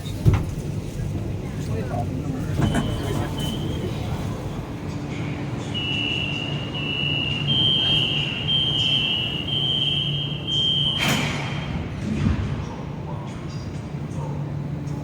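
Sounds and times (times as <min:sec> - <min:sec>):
train doors shutting thud: 0:00.0 - 0:01.1, 0:02.4 - 0:04.4, 0:06.0 - 0:12.8
low train hum: 0:00.0 - 0:15.0
train door warning buzzer: 0:05.8 - 0:11.7.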